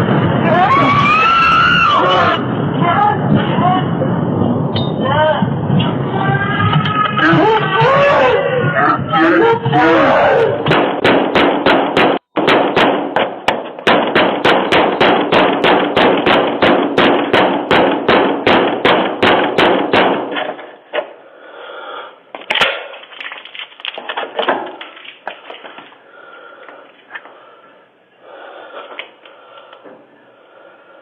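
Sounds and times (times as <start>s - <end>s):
rapid banging on a door: 10.6s - 20.6s
sharp bang: 10.6s - 20.6s.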